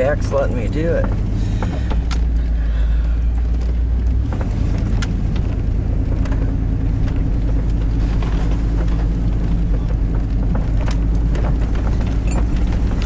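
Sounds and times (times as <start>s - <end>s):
knocks and rattles from bumping: 0.0s - 13.0s
truck engine running under load: 0.0s - 13.0s.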